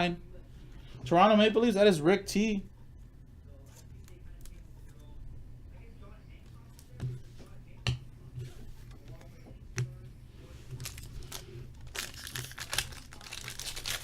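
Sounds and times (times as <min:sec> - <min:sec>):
foil wrapper crinkling: 0:10.7 - 0:14.0.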